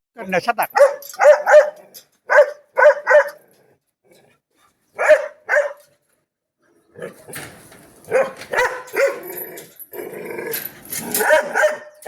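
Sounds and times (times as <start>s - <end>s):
dog barking: 0.7s - 3.4s, 5.0s - 5.9s, 8.1s - 9.2s, 11.2s - 12.0s.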